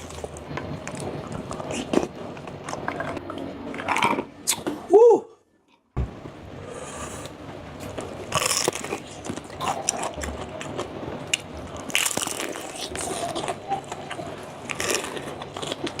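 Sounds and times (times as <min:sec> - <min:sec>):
crunchy food chewing: 0:08.3 - 0:16.0.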